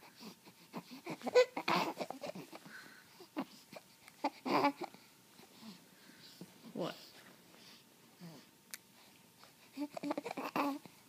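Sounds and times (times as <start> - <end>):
baby babbling: 0.8 - 2.6, 4.2 - 5.0, 9.7 - 10.9.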